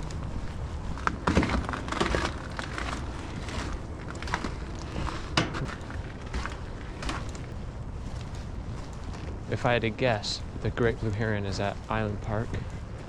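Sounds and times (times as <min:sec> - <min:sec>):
footsteps crunching on frozen ground: 0:00.0 - 0:13.0.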